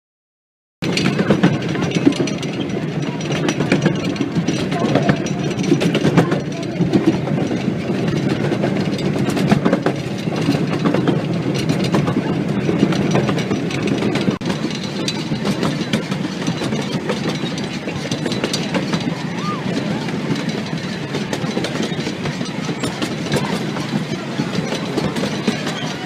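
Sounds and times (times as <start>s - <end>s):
train rumbling on rails: 0.8s - 26.0s
wheels clattering over track: 0.8s - 26.0s.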